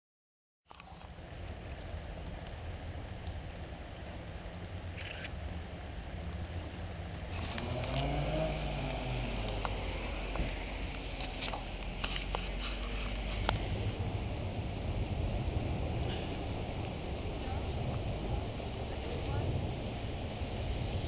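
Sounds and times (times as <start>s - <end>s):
low outdoor rumble: 0.7s - 21.0s
motor vehicle passing: 4.7s - 21.0s.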